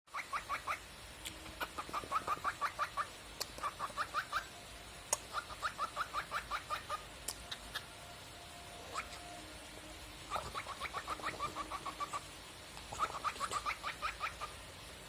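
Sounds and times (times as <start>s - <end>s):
cockatiel chirping: 0.1s - 0.9s, 1.5s - 7.9s, 8.8s - 9.3s, 10.3s - 12.3s, 12.9s - 14.6s.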